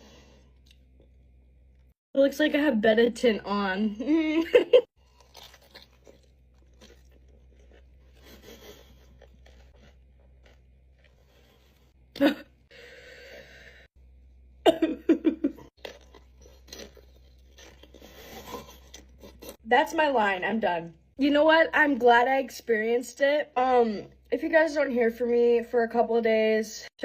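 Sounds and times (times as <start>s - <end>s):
person chewing crunchy food: 5.0s - 12.1s, 15.6s - 19.6s.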